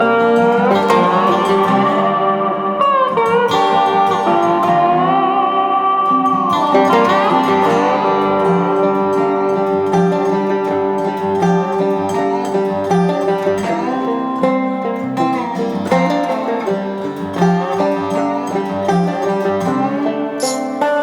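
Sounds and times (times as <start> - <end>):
upbeat banjo and guitar music: 0.0 - 21.0.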